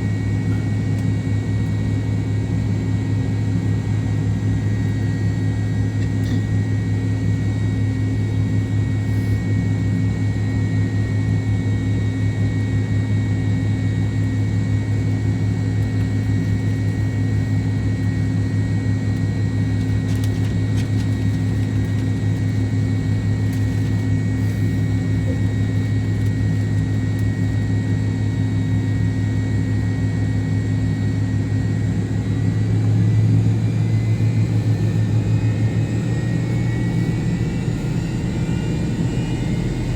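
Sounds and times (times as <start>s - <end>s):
jet engine drone in cabin: 0.0s - 39.9s
high engine whines: 29.4s - 39.9s.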